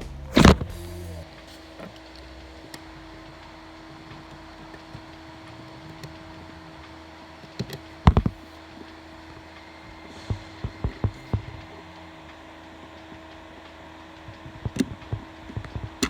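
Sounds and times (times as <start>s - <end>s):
steady low hum: 0.0s - 16.0s
sharp plastic clicks and knocks: 3.9s - 9.4s, 10.2s - 11.8s, 13.0s - 16.0s.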